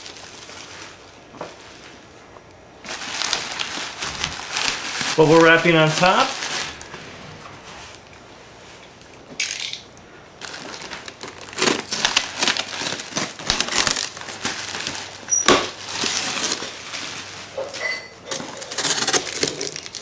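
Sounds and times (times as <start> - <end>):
plastic packaging crinkling: 0.0 - 1.9, 2.8 - 7.0, 10.4 - 20.0.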